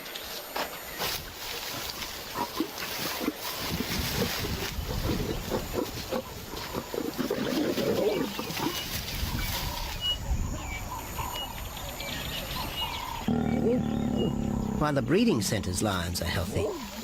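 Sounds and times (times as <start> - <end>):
lion growling: 2.2 - 8.9, 11.0 - 17.0.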